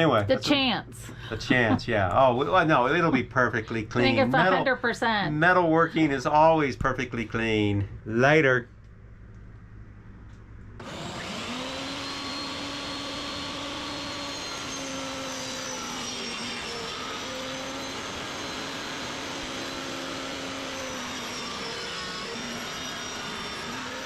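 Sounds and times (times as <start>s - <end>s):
electric motor whine: 10.8s - 24.0s.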